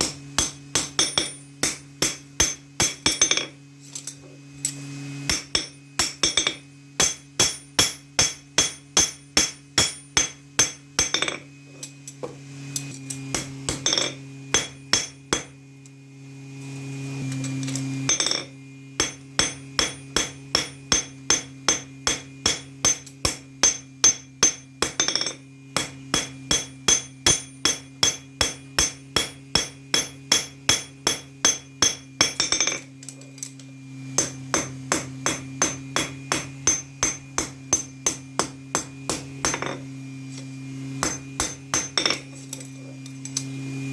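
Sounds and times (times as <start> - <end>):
hammer striking steel on anvil: 0.0 - 3.6, 5.2 - 11.5, 13.3 - 15.6, 18.1 - 32.9, 34.2 - 39.9, 41.0 - 42.4.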